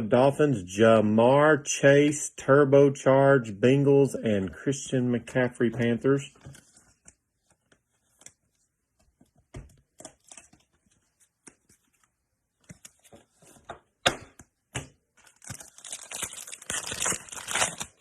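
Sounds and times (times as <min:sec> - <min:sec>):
wrapper crinkling and tearing: 0:15.2 - 0:18.0.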